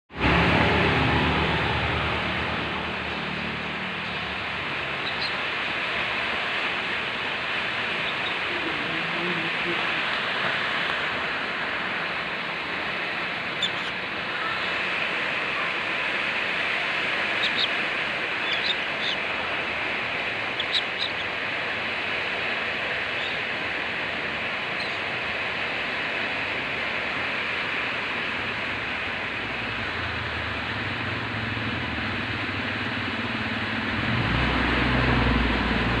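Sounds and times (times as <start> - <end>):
low rumble: 0.1 - 23.1
steady rushing noise: 0.1 - 36.0
cockatiel chirps: 5.0 - 5.4, 13.5 - 13.9, 17.4 - 17.8, 18.4 - 19.2, 20.5 - 21.3, 24.7 - 25.0.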